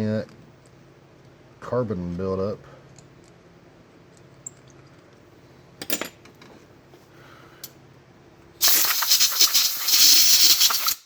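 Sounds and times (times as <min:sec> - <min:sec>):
compressed air blow gun hissing: 0:08.6 - 0:11.0.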